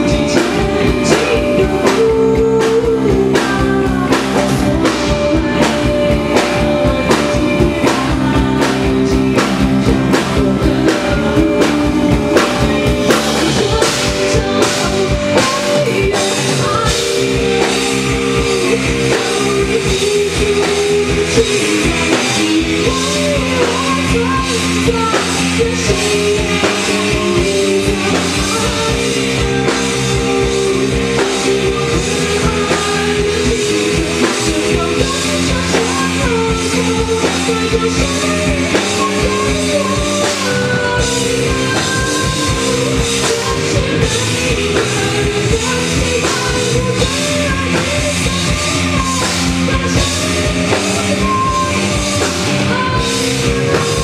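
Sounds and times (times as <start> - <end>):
drum kit: 0.0 - 54.0
rock band playing: 0.0 - 54.0.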